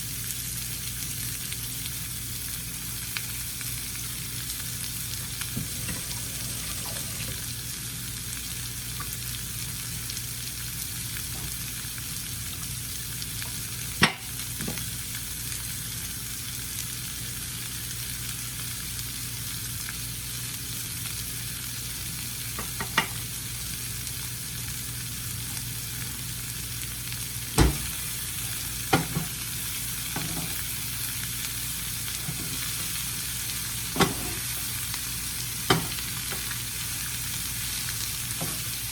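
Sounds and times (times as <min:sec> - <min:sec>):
cabbage sizzling in a pan: 0:00.0 - 0:38.9.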